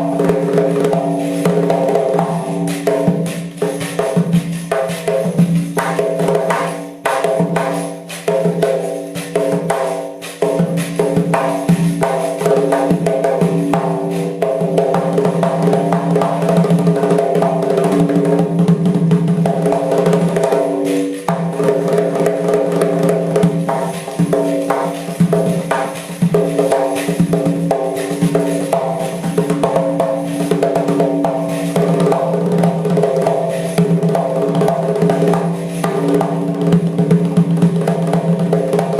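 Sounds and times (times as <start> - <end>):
frame drum with jingles: 0.0 - 38.9.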